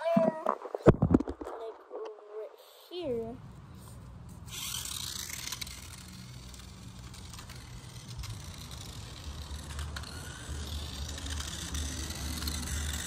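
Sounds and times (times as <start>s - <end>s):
toy car motor rumble: 4.5s - 13.0s.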